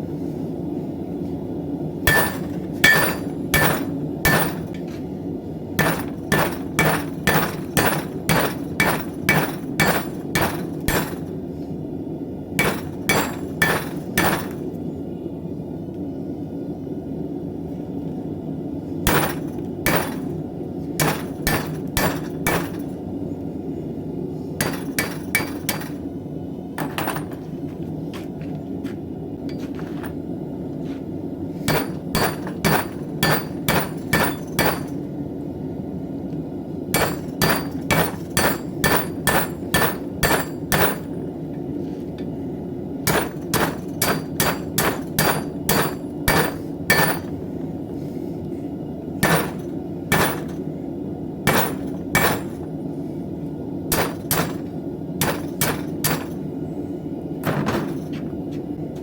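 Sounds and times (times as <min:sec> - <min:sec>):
hammer striking steel on anvil: 0:02.1 - 0:04.8, 0:05.8 - 0:11.3, 0:12.6 - 0:14.7, 0:19.1 - 0:20.3, 0:21.0 - 0:22.9, 0:24.6 - 0:26.0, 0:31.7 - 0:35.0, 0:36.9 - 0:41.2, 0:43.1 - 0:47.4, 0:49.2 - 0:50.5, 0:51.5 - 0:52.6, 0:53.9 - 0:56.4.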